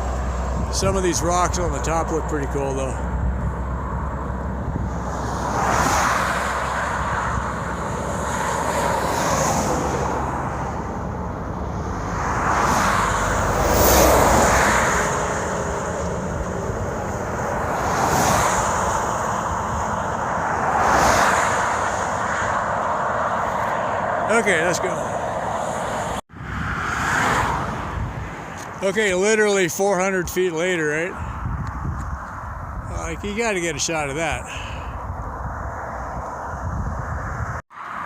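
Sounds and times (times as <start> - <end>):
wind rumble on microphone: 0.0 - 24.2, 25.1 - 29.2, 31.1 - 37.6
road traffic passing: 0.0 - 38.0.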